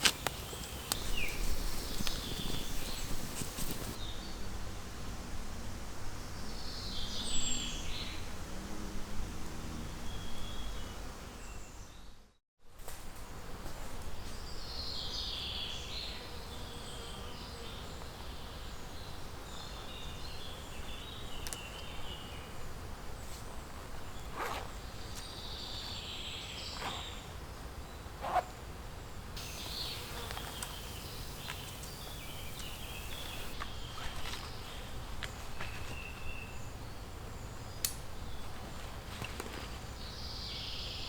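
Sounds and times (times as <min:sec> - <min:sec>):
birds chirping: 0:00.0 - 0:04.0, 0:29.4 - 0:33.9
low background noise: 0:12.7 - 0:41.0.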